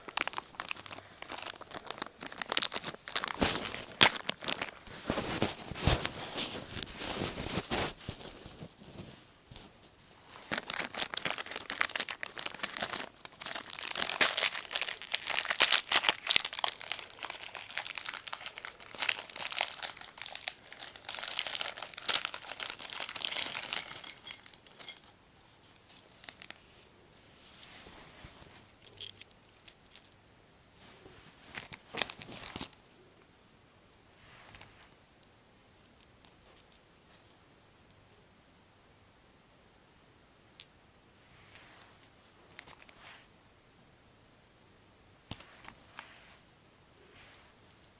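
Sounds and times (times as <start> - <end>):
plastic packaging crinkling: 0.0 - 9.2, 10.3 - 25.1, 25.9 - 26.6, 31.5 - 32.8.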